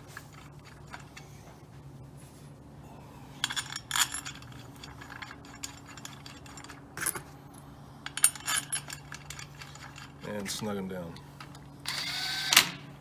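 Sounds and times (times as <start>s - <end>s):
steady low hum: 0.0s - 13.0s
bolts clinking against metal plate: 3.4s - 7.3s, 8.0s - 11.6s.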